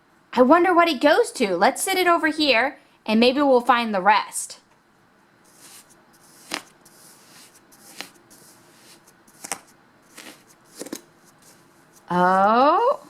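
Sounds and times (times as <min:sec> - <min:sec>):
hands scraping through sand: 0:05.5 - 0:12.6.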